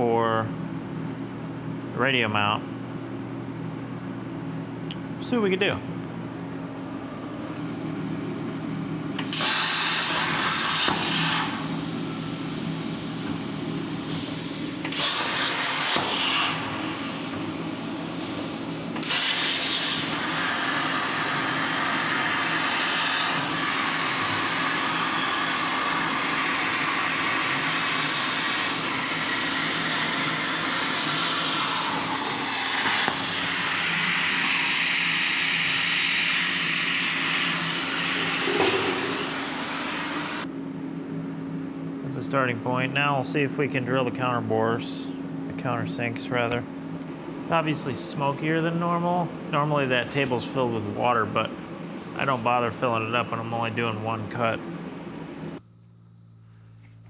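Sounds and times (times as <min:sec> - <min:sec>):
steady machine hum: 0:00.0 - 0:57.0
plasma cutter arc hissing: 0:09.2 - 0:40.4.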